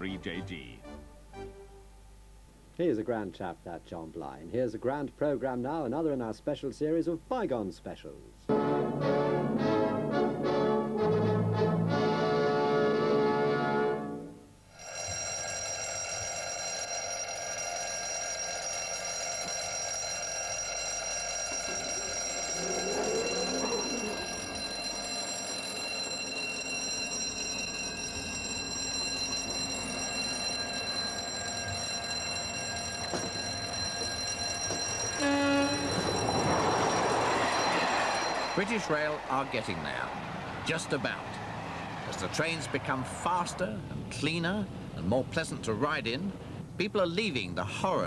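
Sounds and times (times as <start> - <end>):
train whine: 11.7 - 46.8
train horn: 35.1 - 38.1
train rushing past: 35.1 - 46.6.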